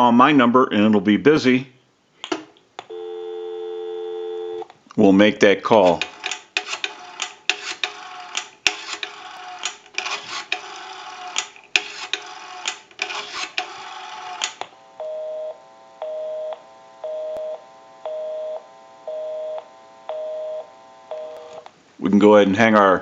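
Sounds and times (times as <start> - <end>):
busy signal tone: 2.9 - 4.6, 15.0 - 21.4.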